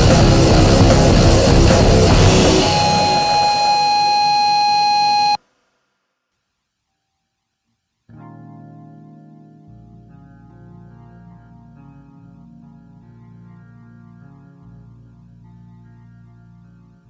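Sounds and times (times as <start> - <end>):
heavy metal music: 0.0 - 4.4.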